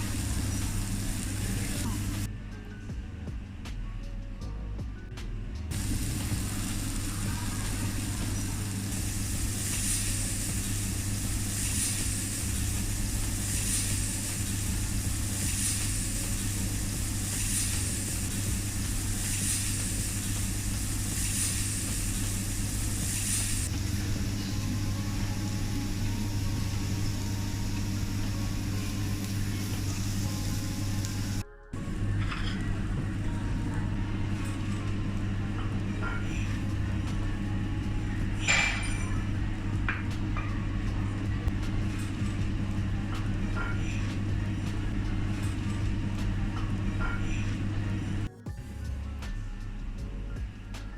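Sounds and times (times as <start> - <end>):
food sizzling on griddle: 0.0 - 2.3, 5.7 - 37.1
kitchen extractor hum: 0.0 - 2.3, 5.7 - 48.3
soft high hiss: 0.0 - 2.3, 5.6 - 48.3.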